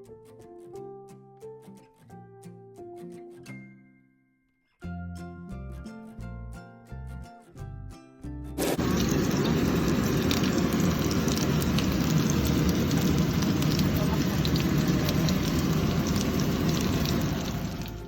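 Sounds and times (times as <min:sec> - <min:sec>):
meat sizzling in a hot pan: 0:08.6 - 0:18.0
small scattered crackles: 0:08.6 - 0:18.0.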